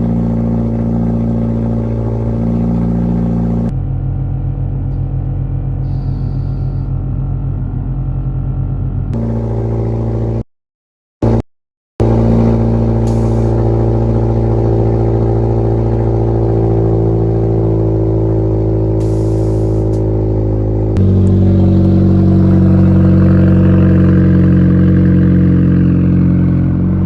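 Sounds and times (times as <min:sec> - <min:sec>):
car engine running: 0:00.0 - 0:10.4, 0:11.2 - 0:11.4, 0:12.0 - 0:27.0.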